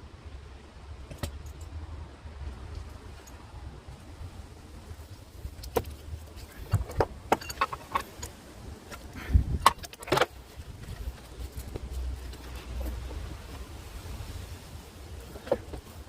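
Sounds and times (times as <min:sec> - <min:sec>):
metallic clicks of tools handled: 0:05.6 - 0:10.3.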